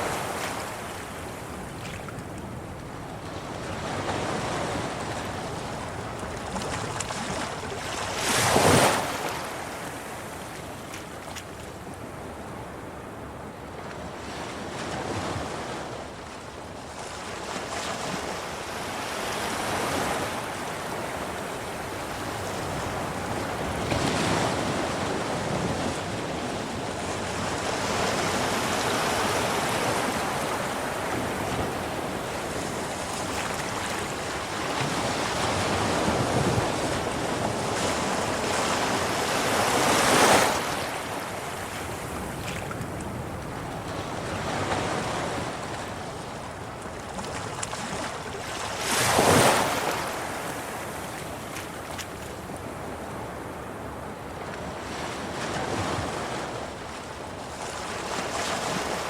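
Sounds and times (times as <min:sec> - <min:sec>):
waves washing over rocks: 0:26.9 - 0:43.4.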